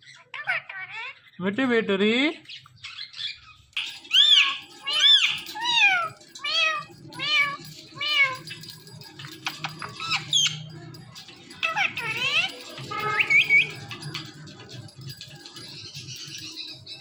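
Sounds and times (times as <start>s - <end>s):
parakeet mimicking cat meows: 0.0s - 1.2s, 4.1s - 8.7s, 11.6s - 13.7s
parakeet chirps and clicks: 2.4s - 17.0s.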